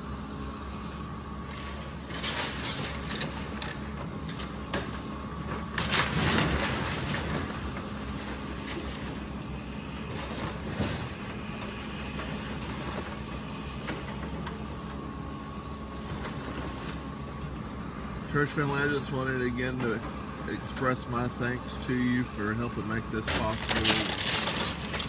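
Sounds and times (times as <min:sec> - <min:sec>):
diesel engine running: 0:00.0 - 0:25.0
crashing rumble of breaking structure: 0:02.0 - 0:09.2, 0:23.3 - 0:25.0.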